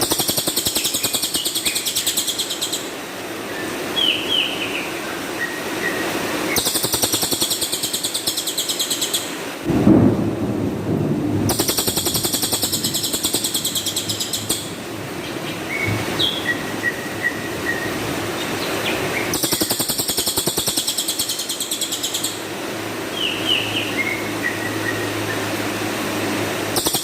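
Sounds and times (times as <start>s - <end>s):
songbird harsh rapid trills: 0.0s - 2.9s, 6.5s - 9.3s, 11.5s - 14.8s, 18.9s - 22.4s, 26.8s - 27.0s.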